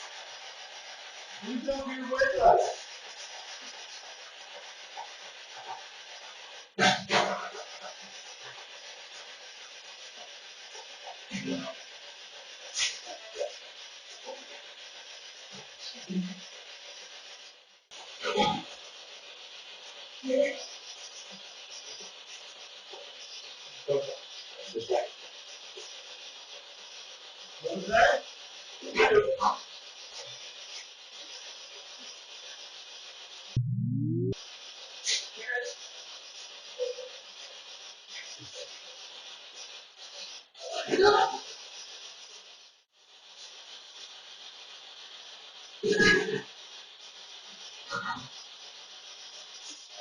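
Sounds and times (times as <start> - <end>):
loud static burst: 0.0 - 50.0
radio static hiss: 0.0 - 50.0
garbled voice-like fragments: 0.4 - 15.1, 17.9 - 26.0, 27.6 - 30.4, 38.1 - 41.6, 45.8 - 46.6, 47.9 - 48.6.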